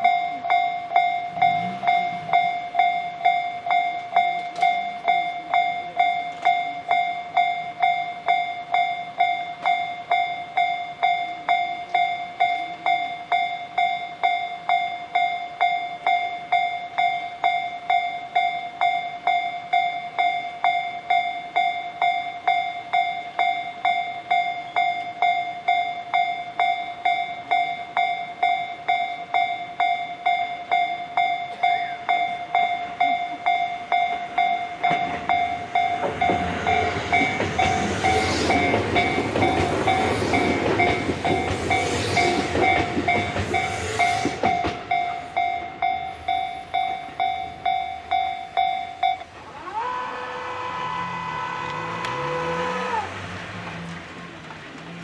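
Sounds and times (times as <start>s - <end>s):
level-crossing warning bell: 0.0s - 55.0s
steady pitched tone: 0.0s - 55.0s
train wheels clattering on rail joints: 3.7s - 6.7s, 32.5s - 46.0s, 53.1s - 55.0s.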